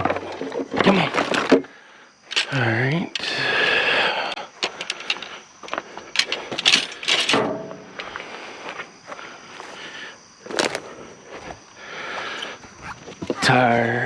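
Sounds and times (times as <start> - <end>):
junk clattering on scrap pile: 0.0 - 1.7, 4.6 - 8.2.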